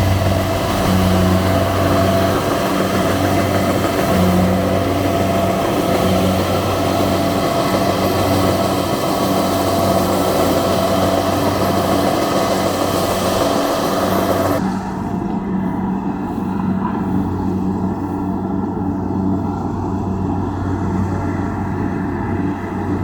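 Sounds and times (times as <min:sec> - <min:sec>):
combine harvester running: 0:00.0 - 0:23.0.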